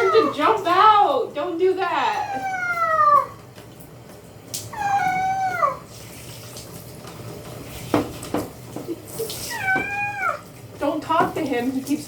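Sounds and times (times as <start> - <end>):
cat meowing: 2.1 - 3.4, 4.7 - 5.9, 9.5 - 10.5
water splashing: 4.6 - 12.0.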